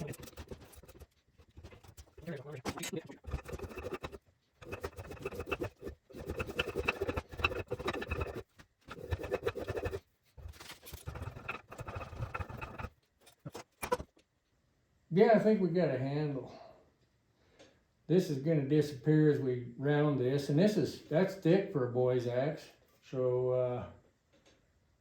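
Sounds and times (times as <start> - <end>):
hand tool scraping wood: 0.0 - 14.0.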